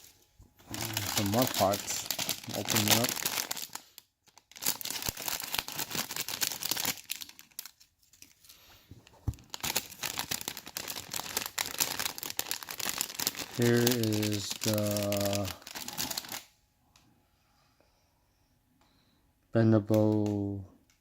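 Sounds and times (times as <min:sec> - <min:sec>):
plastic bag crinkling and tearing: 0:00.0 - 0:16.5.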